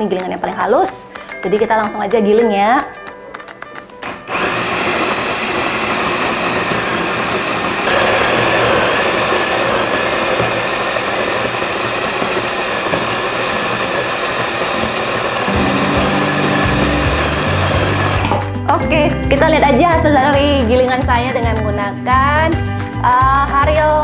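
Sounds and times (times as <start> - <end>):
coffee grinder whirring: 4.3 - 15.5.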